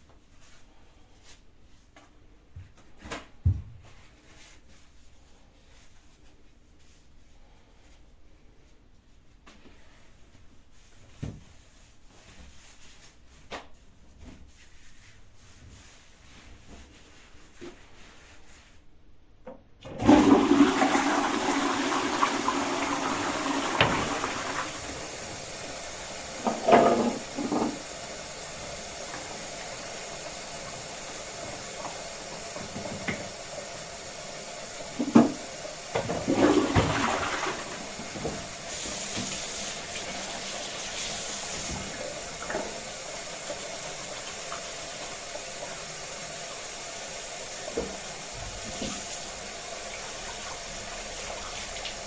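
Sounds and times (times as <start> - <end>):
toilet flushing: 19.9 - 52.0
cistern refilling hiss: 20.1 - 52.0.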